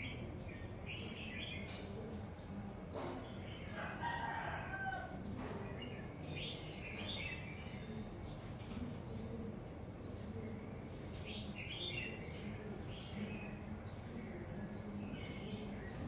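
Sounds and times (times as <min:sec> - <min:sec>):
low background noise: 0:00.0 - 0:16.0
small birds chirping: 0:00.0 - 0:16.0
rooster crowing: 0:03.7 - 0:05.2.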